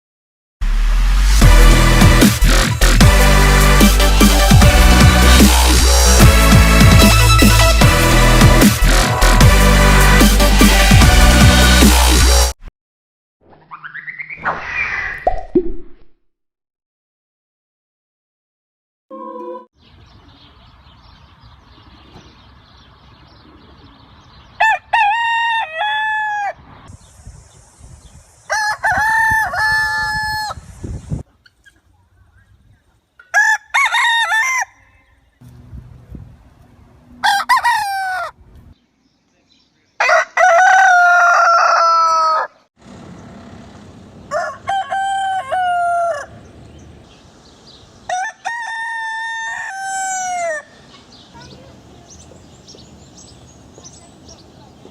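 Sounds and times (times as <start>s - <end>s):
roosters crowing: 24.5s - 26.7s, 28.4s - 30.7s, 33.2s - 35.4s, 37.2s - 38.4s, 40.0s - 46.8s, 47.7s - 51.6s.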